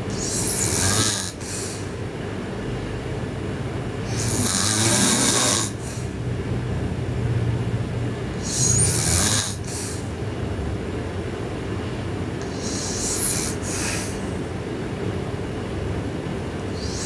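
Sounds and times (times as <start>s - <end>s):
girl snoring loudly: 0.1s - 1.9s, 4.0s - 6.0s, 8.3s - 10.1s, 12.4s - 14.4s, 16.7s - 17.0s.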